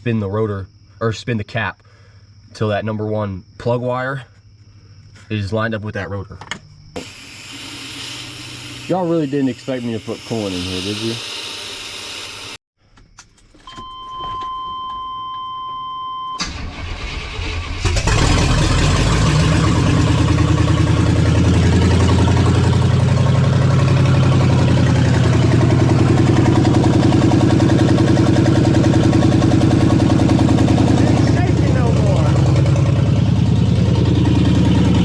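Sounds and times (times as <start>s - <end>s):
pickup engine cranking and idling: 16.4s - 35.0s.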